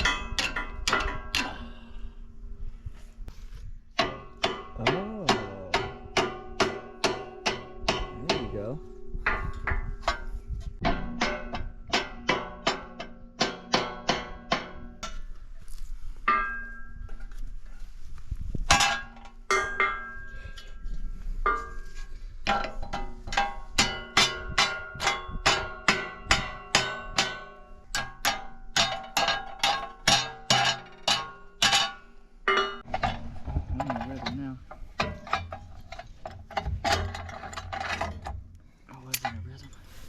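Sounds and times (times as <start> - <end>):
hammer striking steel plate: 4.0 - 8.7, 10.8 - 14.9.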